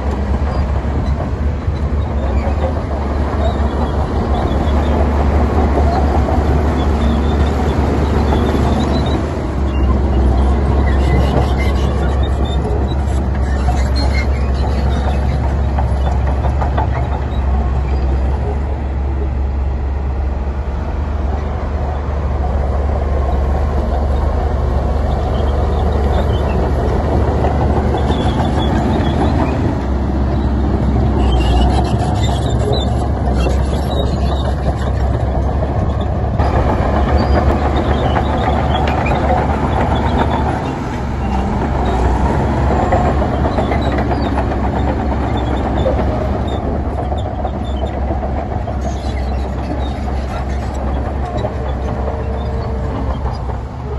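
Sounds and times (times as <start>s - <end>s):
heavy diesel machinery rumbling: 0.0s - 53.9s.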